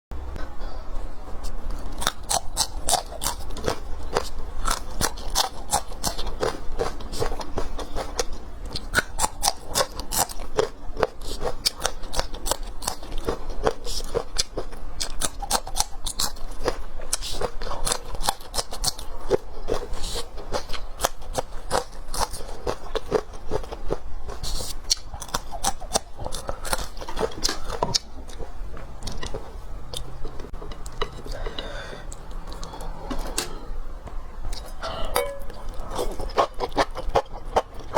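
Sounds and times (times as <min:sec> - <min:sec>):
chewing and crunching food: 0:00.4 - 0:37.9.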